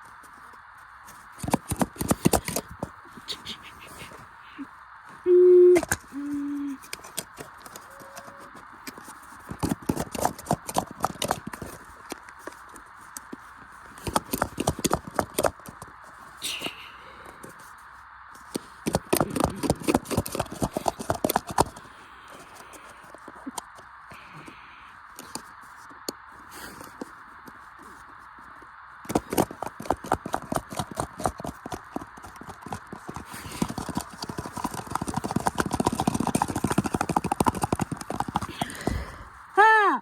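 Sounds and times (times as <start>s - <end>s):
short electronic tones: 5.2s - 6.8s, 7.8s - 8.6s.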